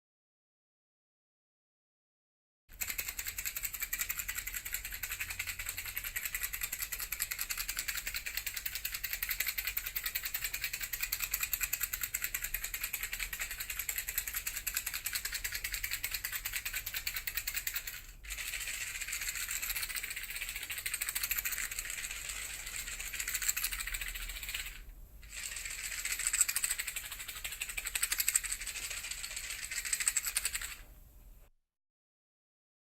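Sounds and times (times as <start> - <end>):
matches rattling in a box: 2.8 - 30.8.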